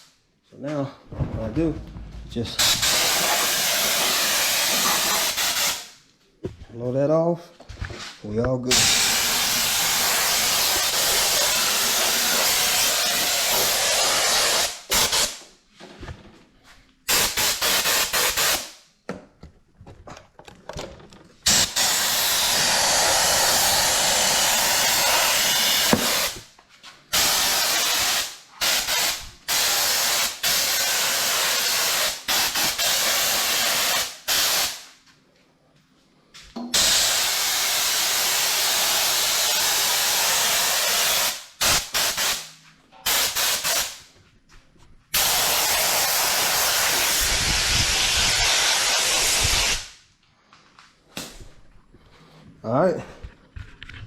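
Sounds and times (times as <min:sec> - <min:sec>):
compressed air hissing from blow gun: 0:02.6 - 0:05.9, 0:08.7 - 0:15.4, 0:21.5 - 0:26.4, 0:27.2 - 0:34.9, 0:36.8 - 0:42.5, 0:45.2 - 0:50.0.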